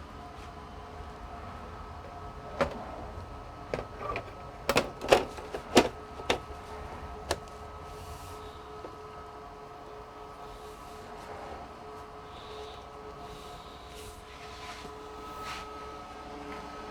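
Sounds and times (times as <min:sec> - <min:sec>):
faint steady hum: 0:00.0 - 0:16.9
computer parts clicking and knocking: 0:02.6 - 0:02.9, 0:03.7 - 0:06.5.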